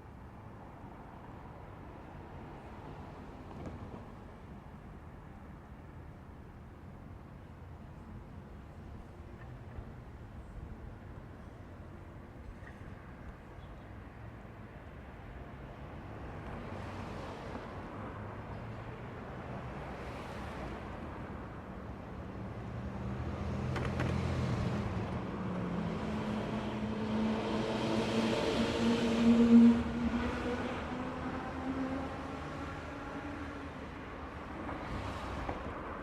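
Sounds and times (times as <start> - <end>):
vehicles passing: 14.0 - 36.0.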